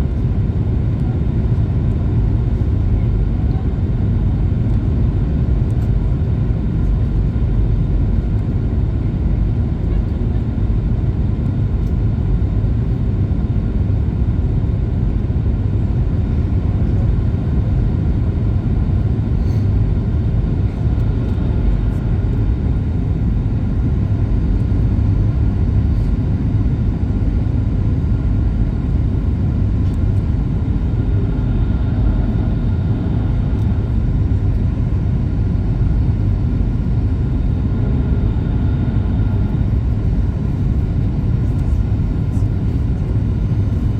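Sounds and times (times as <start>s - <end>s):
jet engine rumble in cabin: 0.0s - 43.9s.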